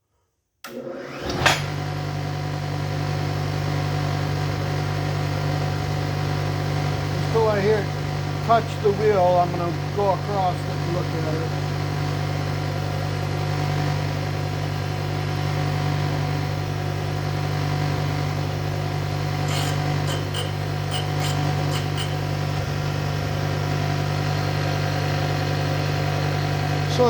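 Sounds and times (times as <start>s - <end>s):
grinding machine humming: 1.0s - 27.0s
abrasive wheel scraping metal: 19.2s - 23.1s.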